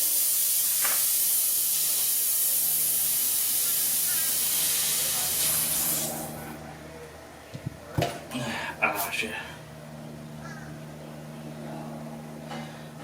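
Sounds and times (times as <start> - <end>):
compressed air hissing: 0.0 - 6.5.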